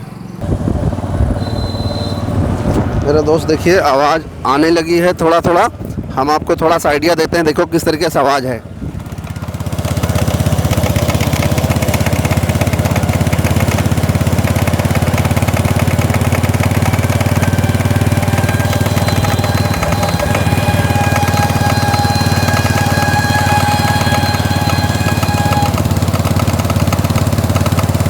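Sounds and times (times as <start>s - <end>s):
motorcycle engine running: 0.0s - 3.2s, 8.6s - 28.0s
rattle from motorcycle wheel: 8.8s - 28.0s
steady whine: 14.9s - 27.4s.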